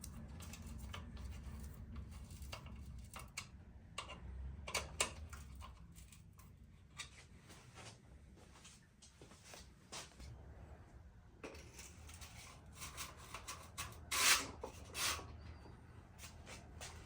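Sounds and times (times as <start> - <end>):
hands rubbing and scraping parts: 0.0 - 7.9, 11.4 - 17.0.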